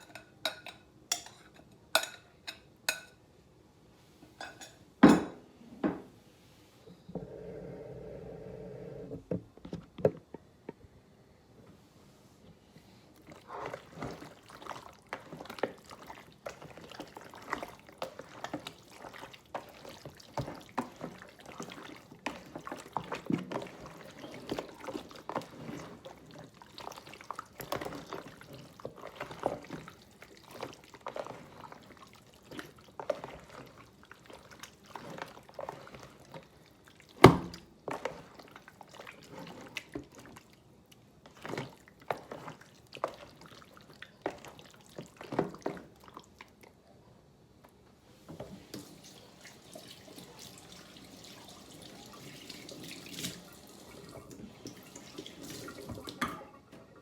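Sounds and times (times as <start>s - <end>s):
wet sticky mixing in a bowl: 13.1s - 46.8s.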